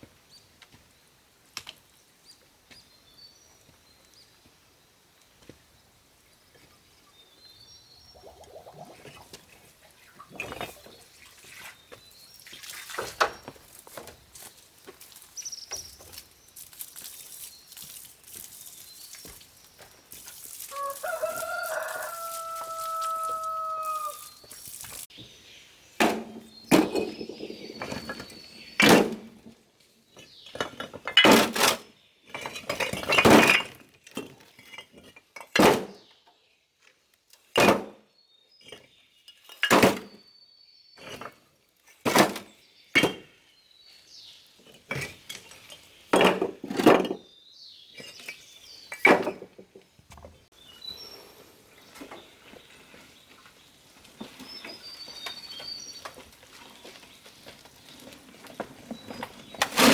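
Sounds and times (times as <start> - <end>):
rooster crowing: 20.7 - 24.4.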